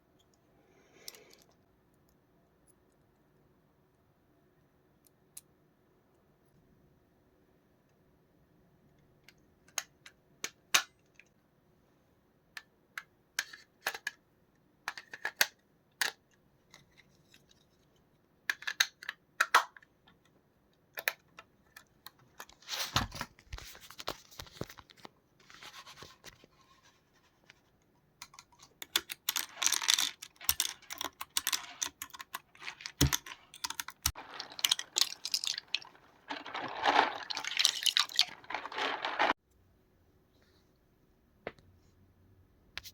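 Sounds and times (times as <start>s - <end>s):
dense scrubbing: 34.1s - 39.4s.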